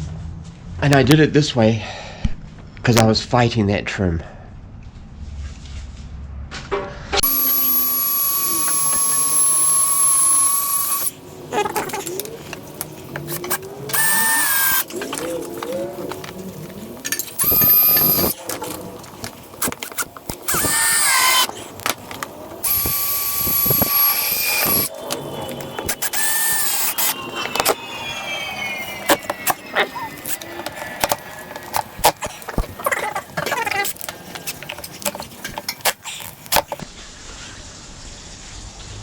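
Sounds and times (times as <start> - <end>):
cordless drill whining: 7.2 - 11.2, 13.3 - 16.2, 17.4 - 18.8, 19.6 - 21.7, 22.6 - 32.8
clatter and handling noises: 30.2 - 36.9.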